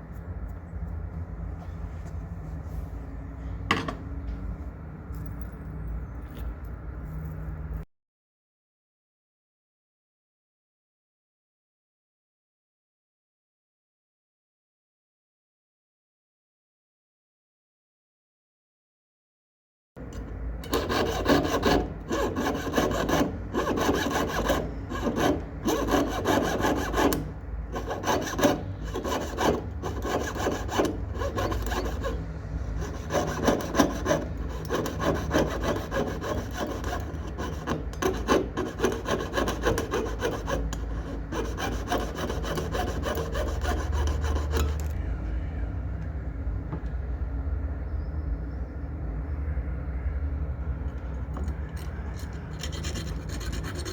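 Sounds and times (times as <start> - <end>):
low steady hum: 0.0 - 7.9, 20.0 - 53.9
hand tool rasping metal: 20.2 - 32.2, 32.8 - 45.0, 51.8 - 53.9.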